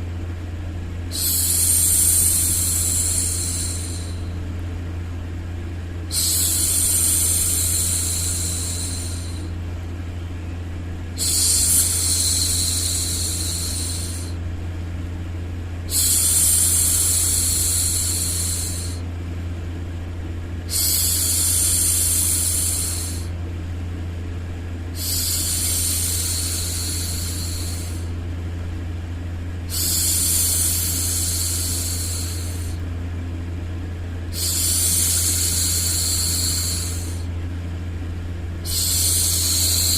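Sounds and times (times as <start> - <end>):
white noise hum: 0.0 - 39.9
woman shushing: 1.1 - 4.3, 11.2 - 14.4.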